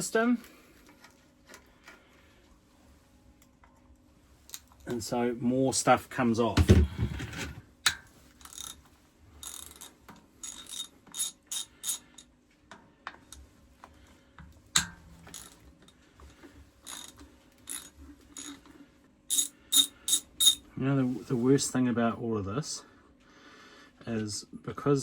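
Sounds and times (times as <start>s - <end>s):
ratchet wrench clicking: 8.4s - 8.8s, 9.4s - 12.3s, 14.8s - 15.6s, 16.8s - 18.6s, 19.3s - 20.6s
sharp metal clink: 19.3s - 20.6s.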